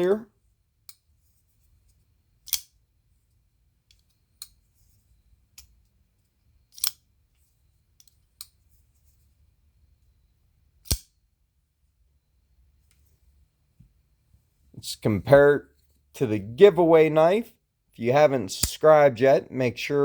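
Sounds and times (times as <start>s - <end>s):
knife blade clicking open and shut: 2.4s - 2.8s, 6.7s - 7.0s, 10.8s - 11.1s.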